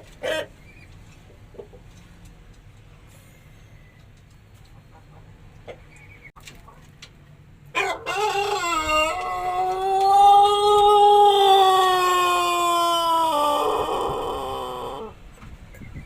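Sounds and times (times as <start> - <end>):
rooster crowing: 7.7 - 15.2.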